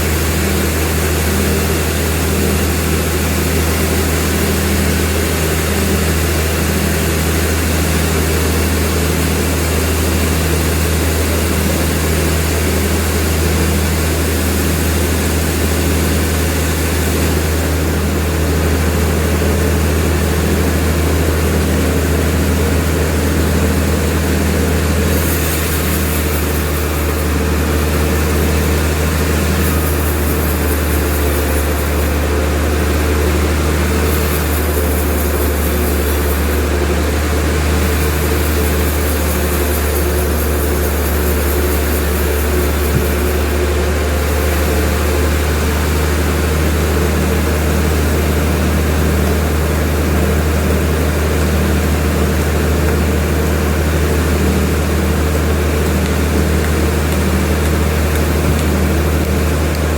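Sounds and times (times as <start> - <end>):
sawmill machinery drone: 0.0 - 59.9
high hiss: 24.9 - 45.4.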